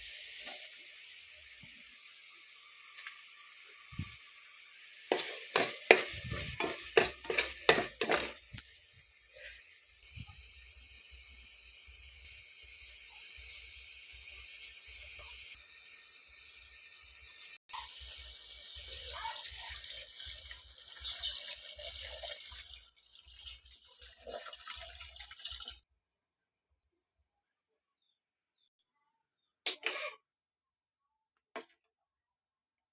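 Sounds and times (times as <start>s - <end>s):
steady cooking hiss: 0.0s - 25.8s.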